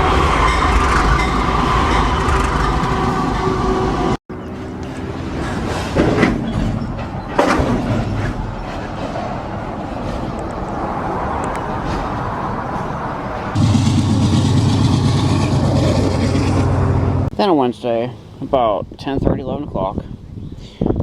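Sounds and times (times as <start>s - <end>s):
freight train rumbling past: 0.0s - 18.4s.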